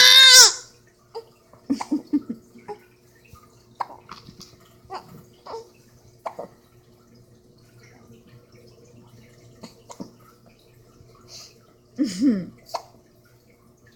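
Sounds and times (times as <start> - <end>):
baby squealing: 0.0 - 0.6
baby blowing spit bubbles: 3.8 - 5.3, 6.2 - 6.6.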